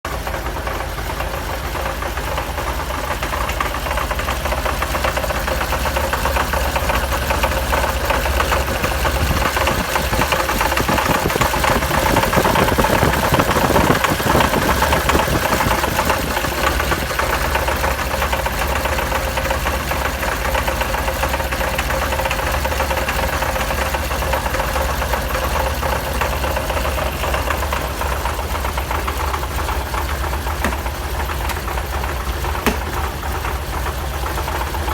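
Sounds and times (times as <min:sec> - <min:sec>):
car engine idling: 0:00.0 - 0:34.9
mechanical knocking: 0:30.4 - 0:33.6.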